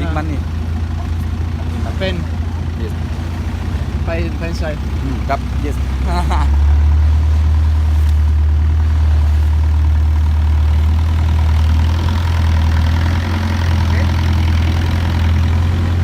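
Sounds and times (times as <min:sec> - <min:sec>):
boat engine humming: 0:00.0 - 0:16.0.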